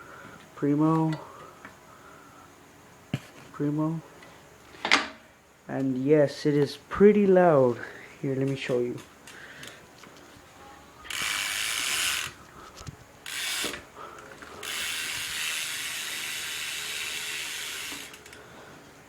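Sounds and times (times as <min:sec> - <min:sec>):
bike wheel freewheel ratcheting: 0:11.0 - 0:12.4, 0:13.2 - 0:18.4.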